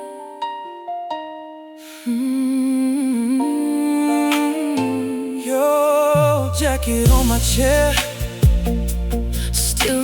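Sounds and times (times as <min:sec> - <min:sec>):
slow r and b ballad: 0:00.0 - 0:10.0
wordless hummed vocal: 0:06.0 - 0:10.0.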